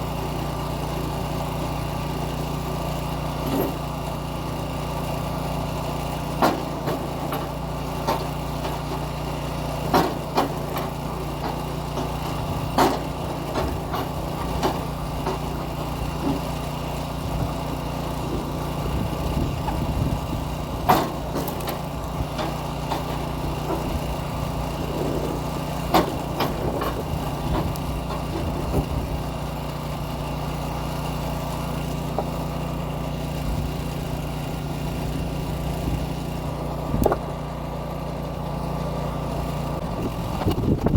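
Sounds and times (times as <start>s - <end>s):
small gasoline engine running: 0.0s - 40.9s.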